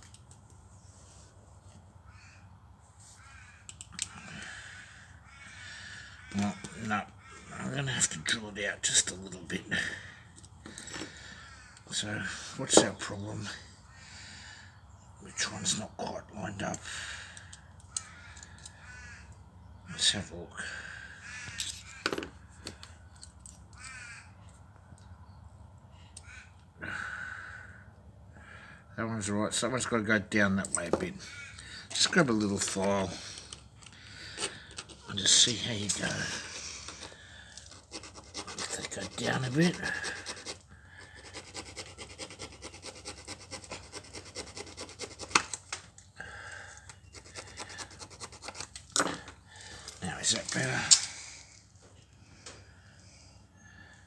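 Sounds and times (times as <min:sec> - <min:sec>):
crows cawing: 0:01.9 - 0:15.8, 0:16.4 - 0:29.0, 0:30.8 - 0:41.4, 0:46.0 - 0:48.2, 0:48.9 - 0:54.0
hand file rasping on metal: 0:37.6 - 0:45.5, 0:47.1 - 0:48.8.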